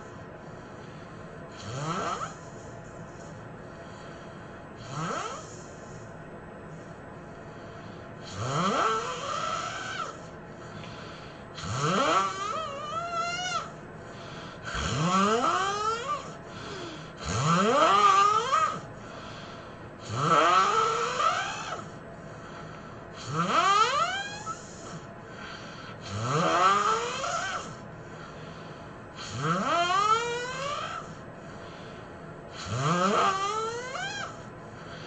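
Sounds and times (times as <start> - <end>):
person snoring loudly: 1.5 - 2.4, 4.8 - 5.6, 8.2 - 10.2, 11.6 - 13.7, 14.6 - 18.9, 20.0 - 21.9, 23.2 - 25.1, 26.0 - 27.8, 29.2 - 31.2, 32.5 - 34.4.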